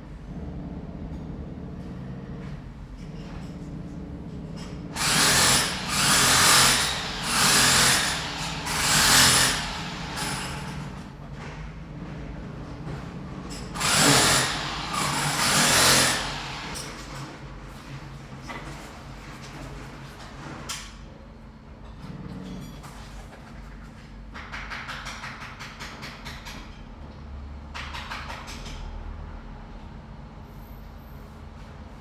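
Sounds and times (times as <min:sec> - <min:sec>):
power drill running: 0:05.0 - 0:11.0, 0:13.8 - 0:16.8.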